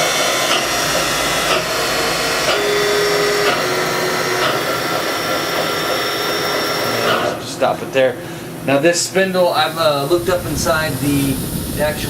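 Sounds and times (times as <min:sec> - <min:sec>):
low hum: 0:00.0 - 0:06.9, 0:10.1 - 0:12.0
mill spindle whirring: 0:00.0 - 0:08.8, 0:09.5 - 0:12.0.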